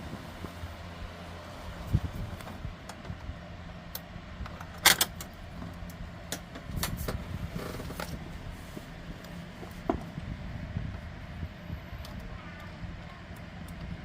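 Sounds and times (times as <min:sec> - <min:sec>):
combination lock parts clicking: 0:03.9 - 0:05.4
lock rattling: 0:04.5 - 0:05.4.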